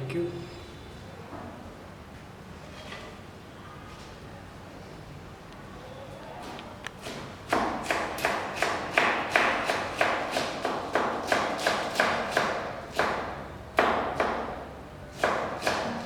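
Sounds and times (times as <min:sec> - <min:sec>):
knife chopping on cutting board: 0:07.0 - 0:14.6, 0:15.2 - 0:16.0.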